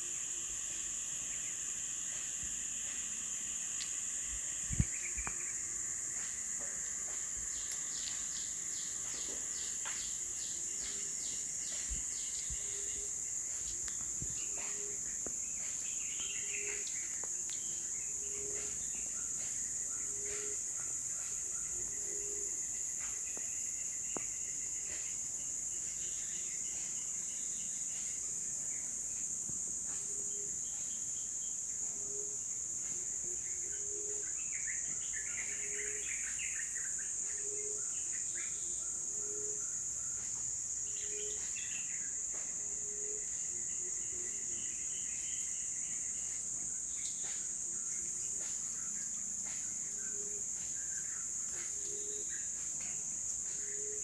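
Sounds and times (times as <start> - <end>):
insect chorus buzzing: 0.0 - 54.0
bird chirps: 7.6 - 22.4.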